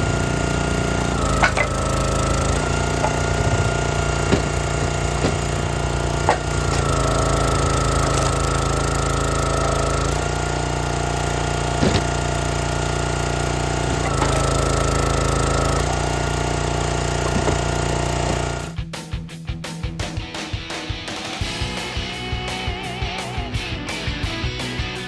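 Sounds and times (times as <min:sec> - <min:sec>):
wood splitting cracks: 0:00.0 - 0:18.7
log splitter engine running: 0:00.0 - 0:18.8.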